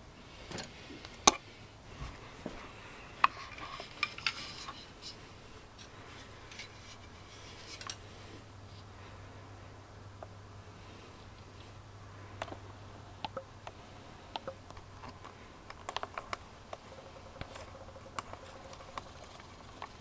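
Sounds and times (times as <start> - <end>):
light rubbing: 0.5 - 8.9.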